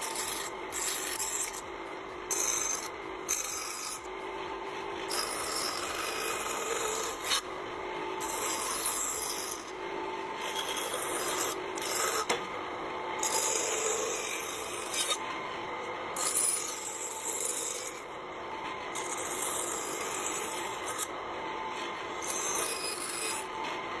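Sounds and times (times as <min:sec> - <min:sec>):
rasp scraping wood: 0:00.0 - 0:01.6, 0:10.4 - 0:12.4, 0:22.2 - 0:23.4.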